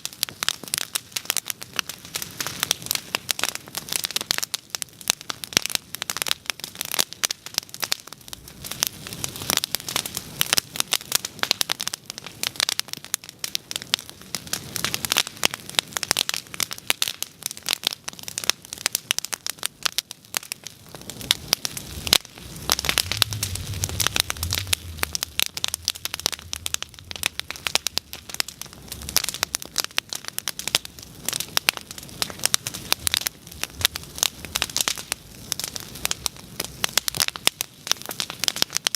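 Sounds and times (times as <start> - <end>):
bonfire crackling and popping: 0.0 - 38.9
soft low rumble: 21.8 - 29.8.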